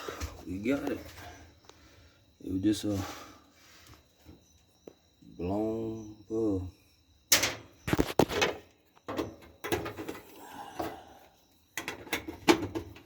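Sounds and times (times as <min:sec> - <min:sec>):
clicks and knocks of parts handled: 0:11.7 - 0:13.0.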